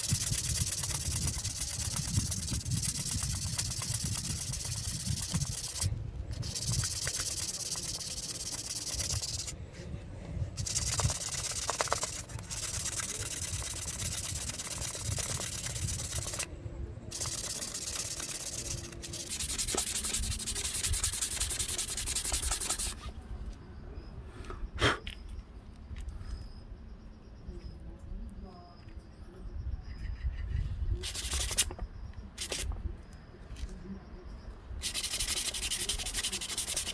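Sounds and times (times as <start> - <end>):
sandpaper rubbing: 0.0 - 9.6, 10.6 - 16.5, 17.1 - 23.1, 31.0 - 31.7, 32.4 - 32.7, 34.8 - 36.9.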